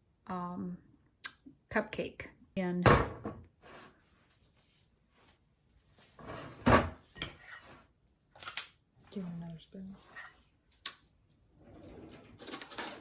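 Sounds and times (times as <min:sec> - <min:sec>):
metal spoon scraping a bowl: 0:06.2 - 0:07.9, 0:09.8 - 0:10.5.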